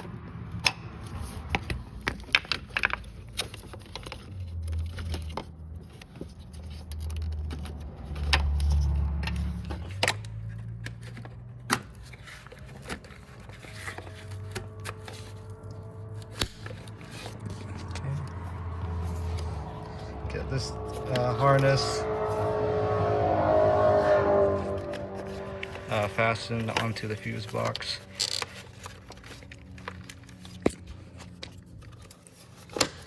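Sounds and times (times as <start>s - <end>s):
wiring harness clicks and rattles: 1.5s - 13.5s
low rumble: 12.0s - 26.6s.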